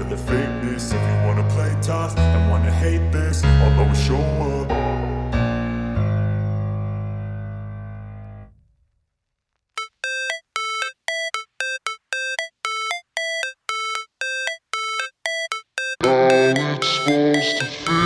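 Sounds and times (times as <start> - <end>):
held keyboard chord: 9.8 - 18.0
synthesizer beep figure: 9.8 - 18.0.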